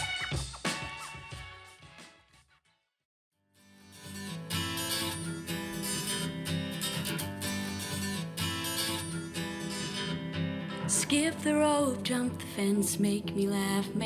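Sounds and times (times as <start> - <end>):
strummed acoustic guitar through speaker: 3.7 - 14.0.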